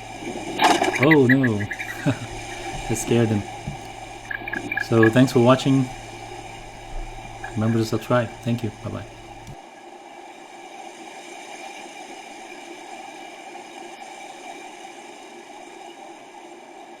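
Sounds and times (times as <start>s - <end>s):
steady hiss: 0.0s - 9.6s.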